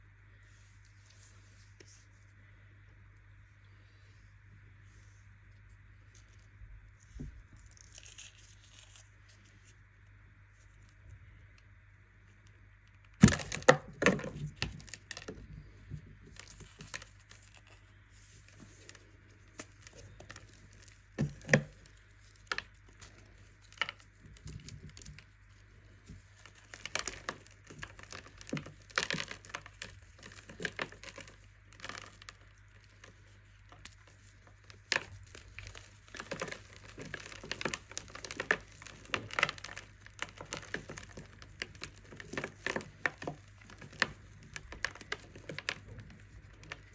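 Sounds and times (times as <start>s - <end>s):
baking soda crunching: 34.8s - 46.9s.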